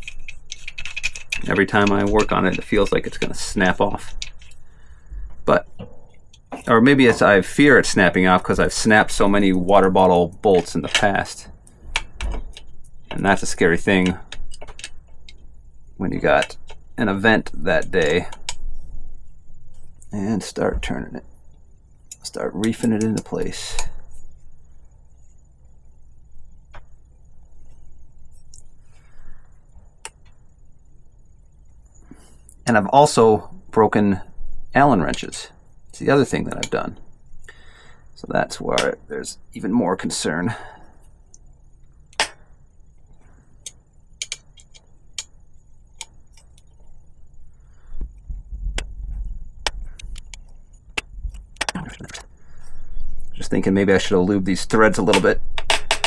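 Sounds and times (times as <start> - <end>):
low steady hum: 0.0 - 56.0
low handling rumble: 46.8 - 54.8.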